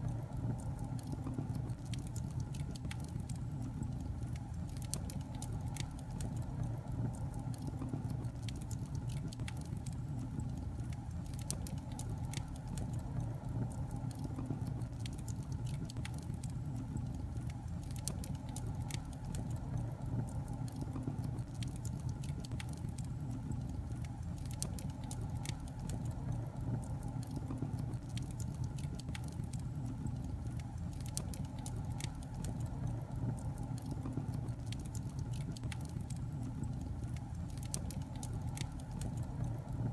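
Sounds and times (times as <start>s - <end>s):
fire crackling and popping: 0.0s - 39.9s.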